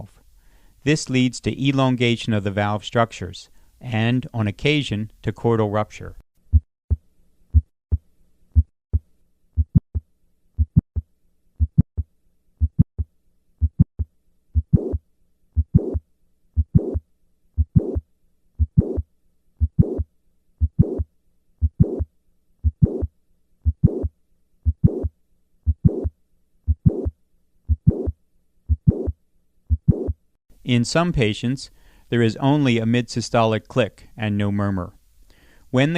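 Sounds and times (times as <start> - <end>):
heartbeat: 6.5 - 8.0, 8.6 - 10.0, 10.6 - 15.0, 15.6 - 16.0, 16.6 - 17.0, 17.6 - 18.0, 18.6 - 27.1, 27.7 - 30.2
heart murmur: 7.5 - 7.7, 9.6 - 10.0, 10.6 - 11.0, 11.6 - 12.0, 12.6 - 13.0, 13.6 - 15.0, 15.6 - 16.0, 16.6 - 17.0, 17.6 - 18.0, 18.6 - 19.0, 19.6 - 24.1, 24.7 - 25.1, 25.7 - 26.1, 26.7 - 27.1, 27.7 - 30.2.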